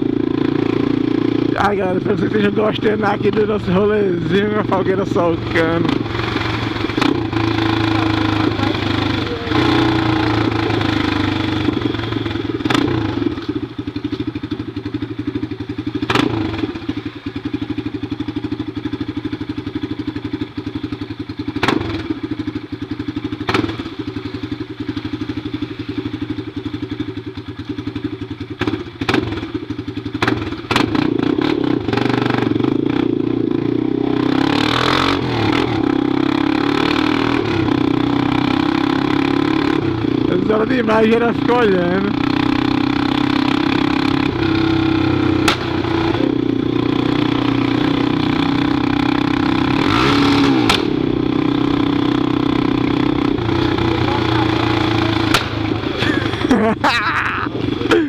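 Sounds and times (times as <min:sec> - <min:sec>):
motorcycle engine without muffler: 0:00.0 - 0:58.0
exhaust cracks: 0:01.5 - 0:10.9, 0:52.8 - 0:56.8.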